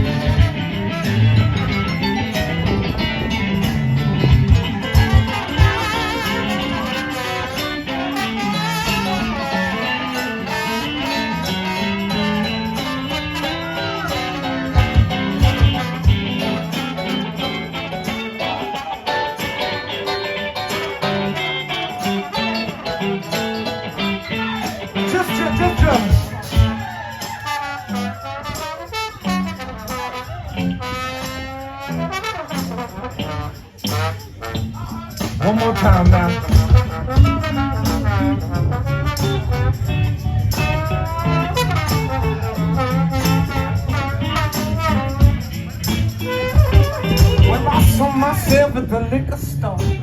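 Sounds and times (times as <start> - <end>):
heavy low thumps: 0.0 - 5.8, 14.8 - 16.4
blues guitar with bass: 0.0 - 50.0
live band playing soul-rock: 0.0 - 50.0.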